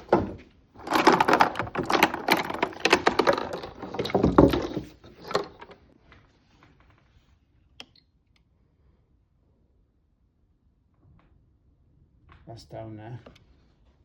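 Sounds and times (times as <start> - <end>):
tools clattering and rattling: 0.0 - 5.8.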